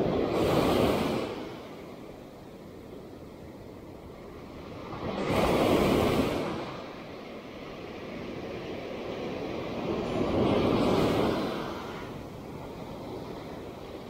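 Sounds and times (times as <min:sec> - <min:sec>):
sea waves breaking on beach: 0:00.0 - 0:14.0.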